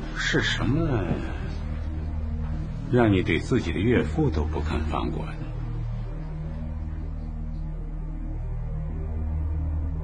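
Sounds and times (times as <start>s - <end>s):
sustained low music notes: 0.0s - 10.0s.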